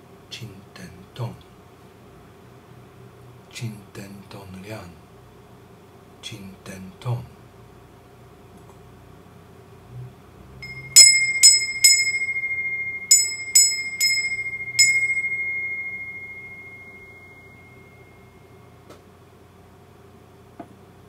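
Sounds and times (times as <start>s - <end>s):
small metal wind bell ringing: 10.6s - 18.5s.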